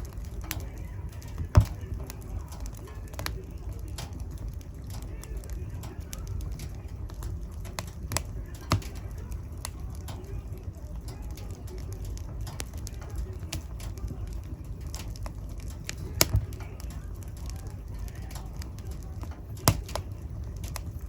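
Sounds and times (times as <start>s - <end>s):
fire crackles and pops: 0.0s - 21.0s
fire rumbling in a fireplace: 0.0s - 21.0s.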